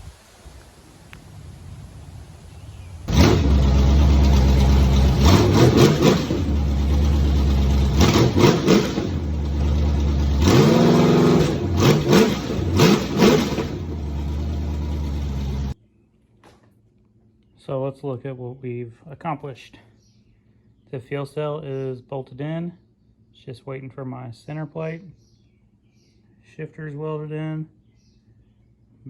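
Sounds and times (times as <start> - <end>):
car engine idling and revving: 3.0 - 15.8.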